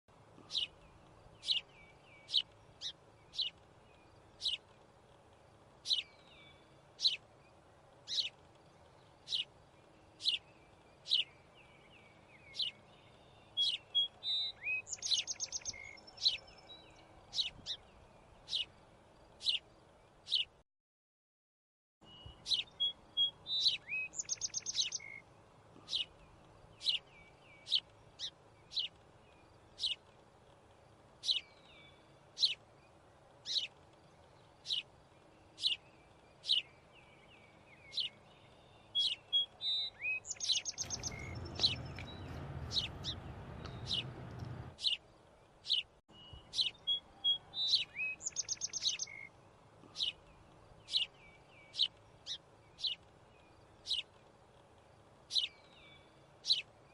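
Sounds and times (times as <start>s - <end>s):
bird trill: 0.4s - 3.6s, 10.1s - 17.9s, 22.0s - 25.2s, 37.7s - 45.0s, 45.6s - 49.3s
bird chirping: 0.4s - 4.7s, 5.8s - 20.6s, 22.0s - 30.1s, 31.2s - 54.2s, 55.3s - 56.9s.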